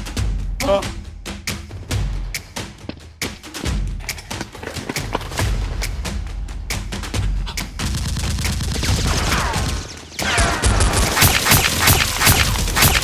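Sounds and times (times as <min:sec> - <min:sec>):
rapid gunfire bursts: 0:07.6 - 0:13.0.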